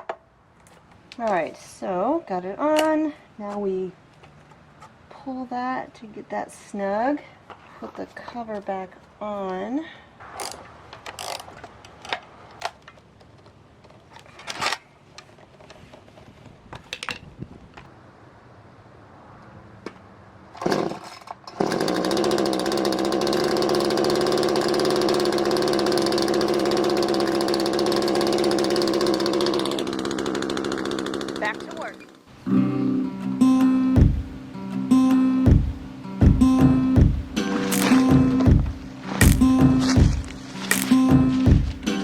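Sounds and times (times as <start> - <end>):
chainsaw running: 20.6 - 32.2, 37.4 - 42.0
chainsaw cover clicks: 40.7 - 41.0.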